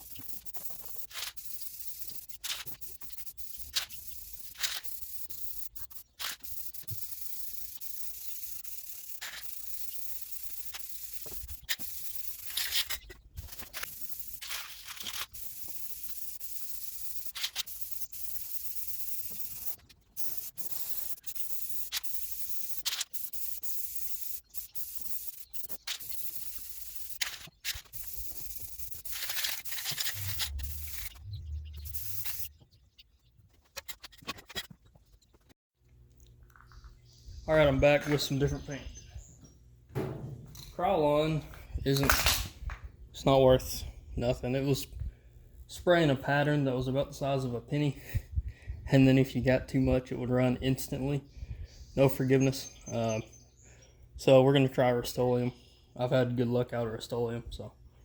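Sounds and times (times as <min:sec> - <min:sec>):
spray paint can hissing: 0:00.0 - 0:32.5.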